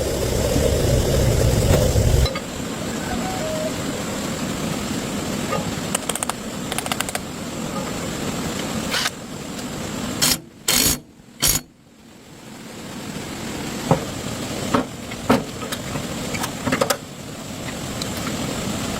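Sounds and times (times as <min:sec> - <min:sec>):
engine running: 0:00.0 - 0:10.0
clicks: 0:05.9 - 0:07.3.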